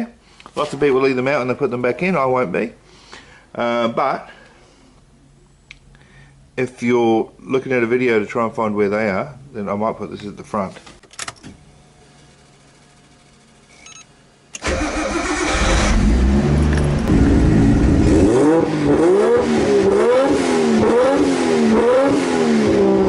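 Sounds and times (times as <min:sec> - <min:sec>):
car engine starting and revving: 0:14.6 - 0:23.0.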